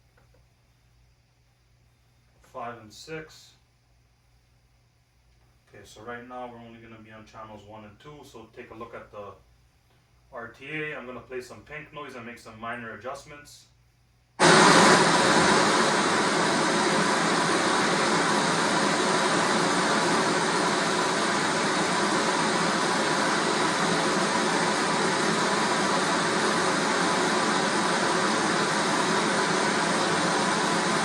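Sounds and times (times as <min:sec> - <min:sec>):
pink noise hiss through speakers: 0:14.4 - 0:31.0.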